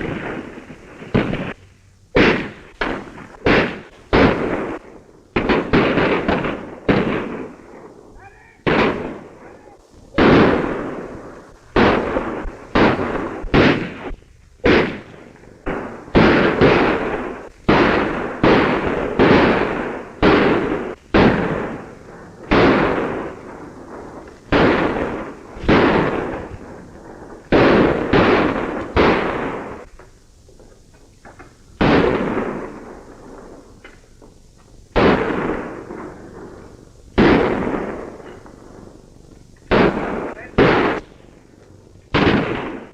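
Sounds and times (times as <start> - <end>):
gunshots with ringing echo: 2.2 - 29.9, 31.8 - 33.8, 35.0 - 39.0, 39.7 - 41.5, 42.1 - 42.9.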